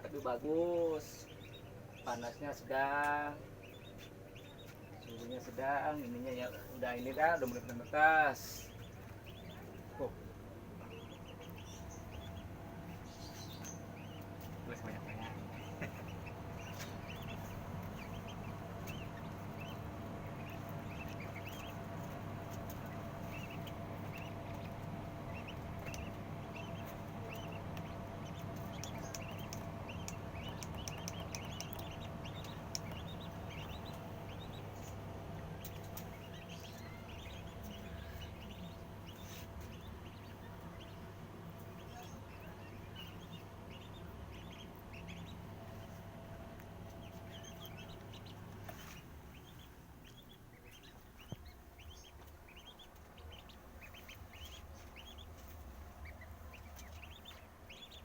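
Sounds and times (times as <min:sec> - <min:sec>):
chicks peeping: 0:00.0 - 0:58.0
steady low hum: 0:00.0 - 0:58.0.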